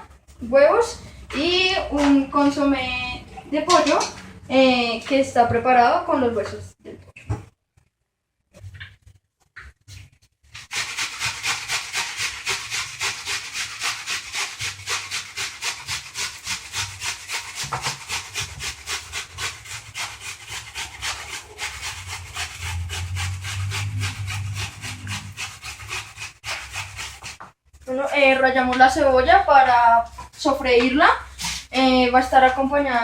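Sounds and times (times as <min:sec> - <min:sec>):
onion scraping on hand grater: 0:10.5 - 0:27.5, 0:31.3 - 0:32.4.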